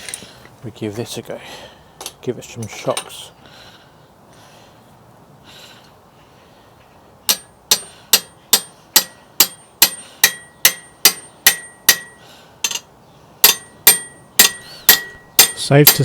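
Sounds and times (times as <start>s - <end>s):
hammer striking metal: 7.3s - 12.8s, 13.4s - 16.0s.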